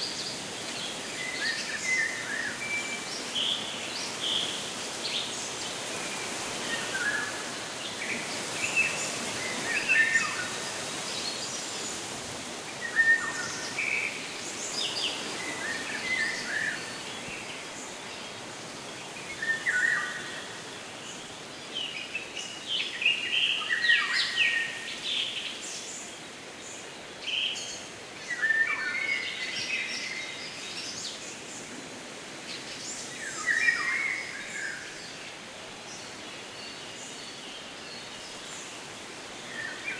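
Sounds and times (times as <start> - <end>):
background hiss: 0.0 - 39.9
songbirds chirping: 0.0 - 39.9.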